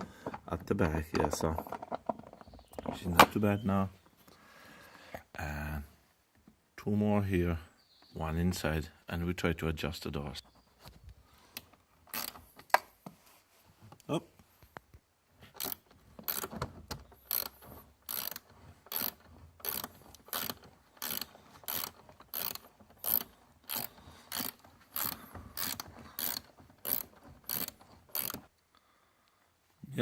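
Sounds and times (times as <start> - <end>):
ratchet wrench clicking: 12.1 - 12.4, 15.6 - 16.5, 17.2 - 28.5.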